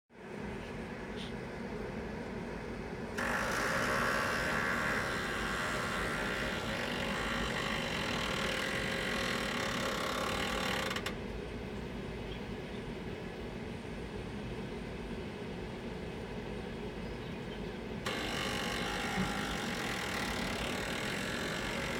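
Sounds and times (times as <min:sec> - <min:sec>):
steady hum: 0:00.2 - 0:21.9
grill loud mechanical noise: 0:01.8 - 0:11.4, 0:17.9 - 0:21.9.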